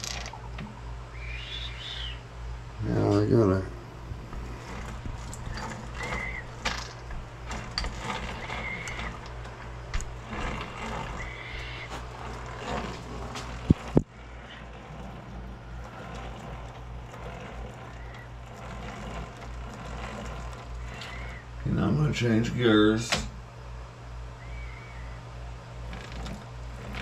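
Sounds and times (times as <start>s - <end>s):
machine motor hum: 0.0s - 27.0s
squeaks from machine drive: 4.3s - 21.6s.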